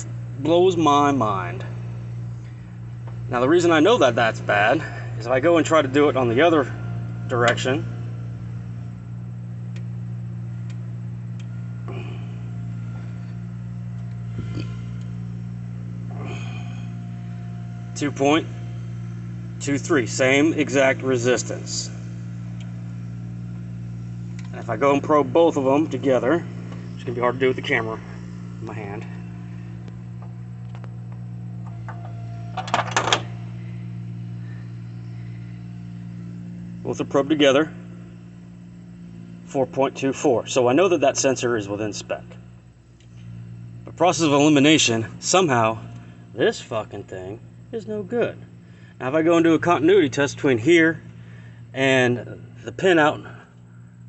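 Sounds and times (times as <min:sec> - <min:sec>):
low machine hum: 0:00.0 - 0:54.0
clicks of handling probes: 0:13.9 - 0:15.1, 0:24.3 - 0:24.6, 0:29.8 - 0:33.1.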